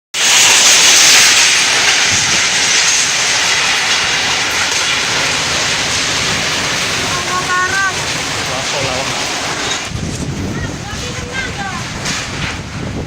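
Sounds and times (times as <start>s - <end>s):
strong storm wind: 0.2s - 13.0s.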